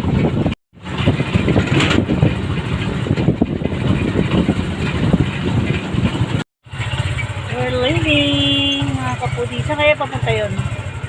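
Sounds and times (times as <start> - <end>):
wind buffeting microphone: 0.0 - 6.4
motorcycle engine rumble: 0.0 - 11.0.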